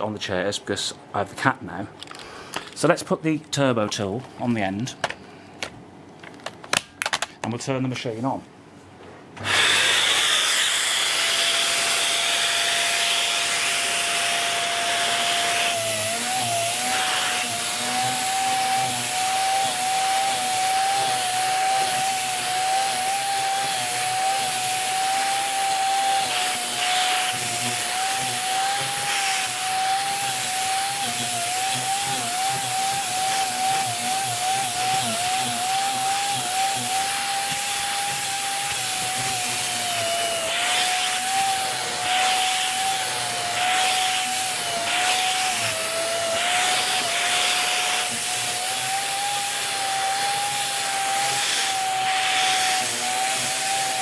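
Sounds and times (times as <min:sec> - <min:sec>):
vacuum cleaner running: 0:09.4 - 0:54.0
vacuum tool strokes on fabric: 0:11.9 - 0:54.0.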